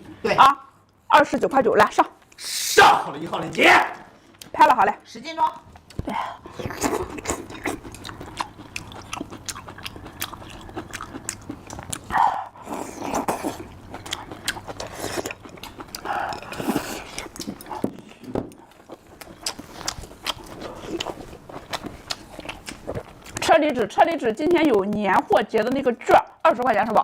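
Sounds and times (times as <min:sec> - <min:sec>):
person chewing crunchy food: 0:05.7 - 0:23.5.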